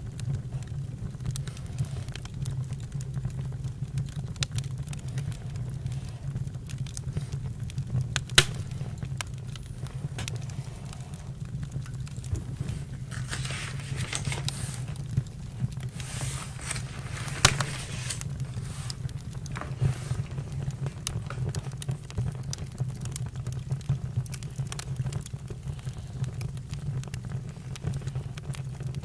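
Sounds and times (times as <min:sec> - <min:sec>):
campfire crackling and popping: 0:00.0 - 0:29.0
steady low rumble: 0:03.1 - 0:22.8.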